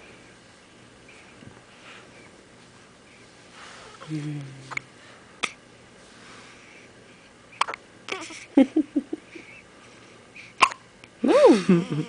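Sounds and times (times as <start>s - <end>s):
baby hiccuping: 7.6s - 8.4s, 10.6s - 10.9s
baby vocal sounds: 7.6s - 8.5s.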